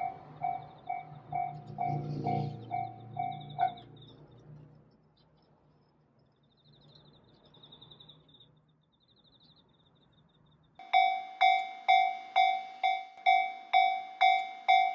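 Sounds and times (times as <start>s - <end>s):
level crossing warning bell: 0.0s - 3.8s, 10.8s - 14.9s
light high chirping: 0.0s - 4.2s.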